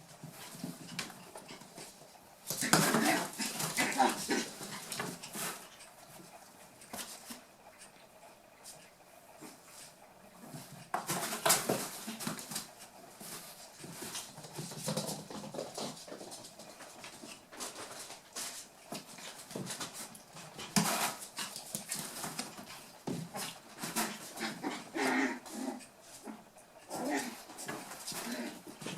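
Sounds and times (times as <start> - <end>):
puppies scuffling: 0.0 - 28.9
puppy vocal sounds: 23.9 - 28.9.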